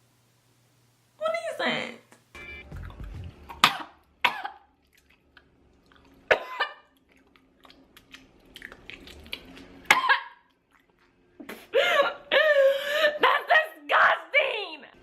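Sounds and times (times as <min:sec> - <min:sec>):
woman coughing: 0:03.6 - 0:04.7, 0:06.3 - 0:06.8, 0:09.9 - 0:10.4.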